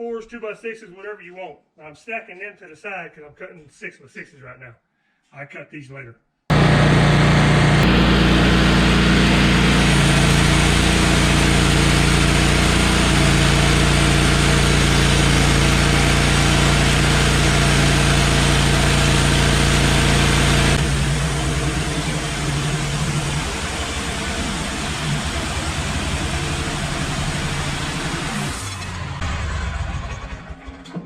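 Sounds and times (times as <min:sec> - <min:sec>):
band saw cutting log: 0:06.5 - 0:29.2
sawmill engine running: 0:06.5 - 0:31.0.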